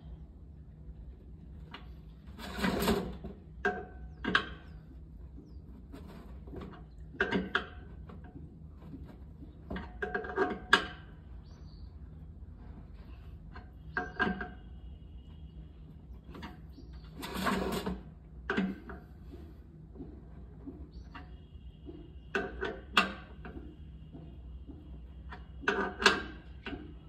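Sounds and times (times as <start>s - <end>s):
scraping rattle: 2.2s - 3.4s, 16.3s - 19.2s.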